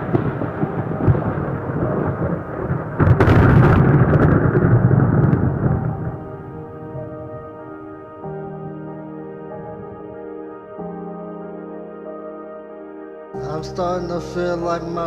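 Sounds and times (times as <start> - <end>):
rain: 0.0 - 7.4
loud thunderclap: 0.0 - 7.5
rumbling thunder: 0.0 - 8.6
ambient synth chords: 0.0 - 15.0.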